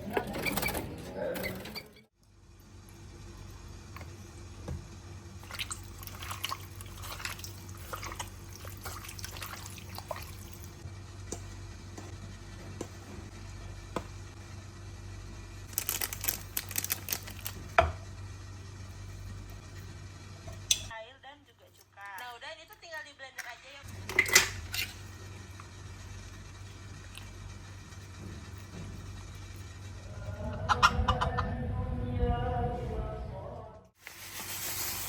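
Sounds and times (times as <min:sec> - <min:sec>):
steady low hum: 0:00.0 - 0:21.0, 0:23.8 - 0:34.0
liquid dripping and squishing: 0:05.4 - 0:10.8.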